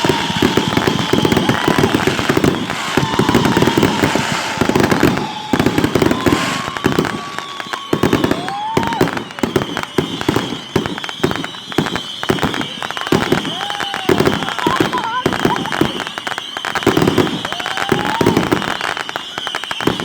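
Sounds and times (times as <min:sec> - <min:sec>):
thin whistling tone: 0:00.0 - 0:12.6
fireworks crackling: 0:00.0 - 0:20.0.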